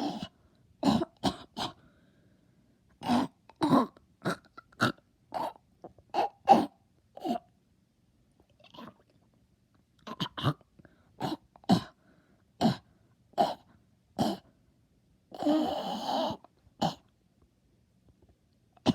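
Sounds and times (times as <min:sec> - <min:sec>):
person coughing: 0:00.8 - 0:01.8.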